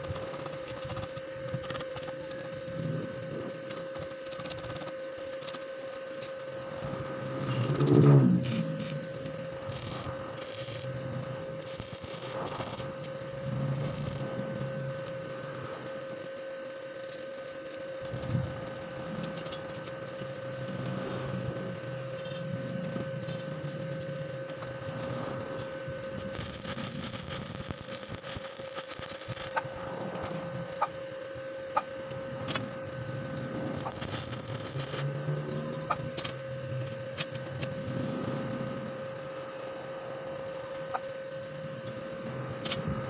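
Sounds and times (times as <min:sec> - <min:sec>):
steady hum: 0:00.0 - 0:43.0
tool scraping and rubbing: 0:09.7 - 0:10.9, 0:26.1 - 0:29.6, 0:33.8 - 0:35.1
dense hissing noise: 0:33.4 - 0:35.4.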